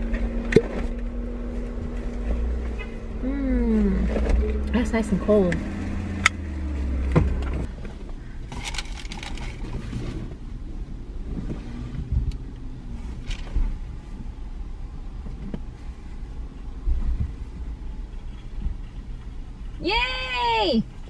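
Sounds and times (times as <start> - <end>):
car rumble: 0.0 - 21.0
clicks and rustles: 7.3 - 10.4.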